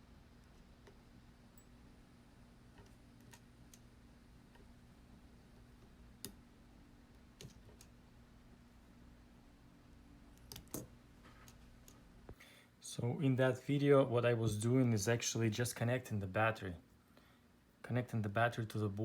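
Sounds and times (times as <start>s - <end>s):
small clicks: 10.3s - 12.0s.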